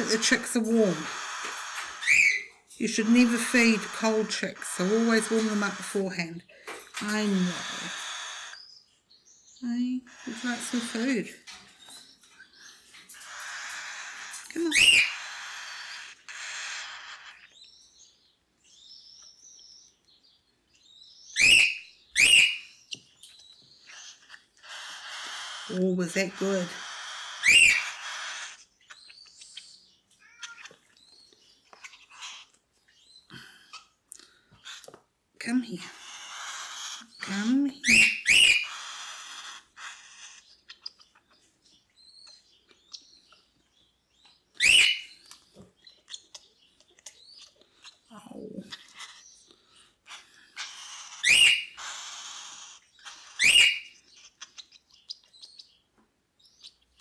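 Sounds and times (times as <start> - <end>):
cockatiel chirping softly: 0.0 - 6.0, 7.0 - 8.8, 11.8 - 33.9, 35.9 - 57.0
cockatiel loud descending calls: 7.5 - 8.6, 24.6 - 25.7.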